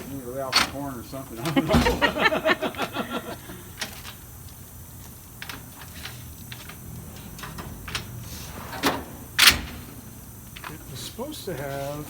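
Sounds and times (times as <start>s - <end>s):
toolbox drawers sliding: 5.9s - 9.9s.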